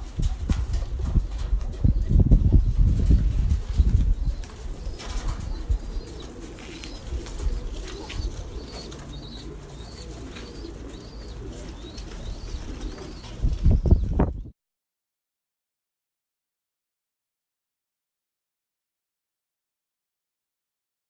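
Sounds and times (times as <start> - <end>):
birds chirping: 1.8 - 14.5.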